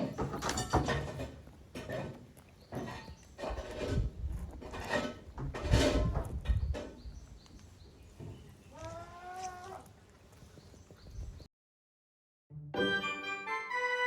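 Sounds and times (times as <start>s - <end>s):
knocks and rustles: 0.0s - 7.2s
young goat bleating: 8.7s - 9.9s.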